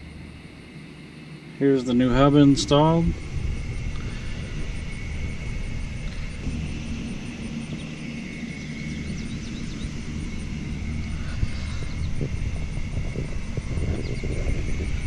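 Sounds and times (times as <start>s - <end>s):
faint high hum: 0.0s - 15.0s
low outdoor rumble: 0.0s - 15.0s.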